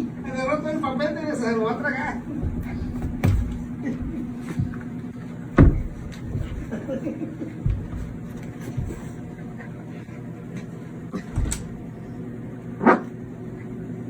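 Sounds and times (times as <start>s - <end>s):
steady low hum: 0.0s - 14.0s
dull thumps and knocks: 2.0s - 9.4s.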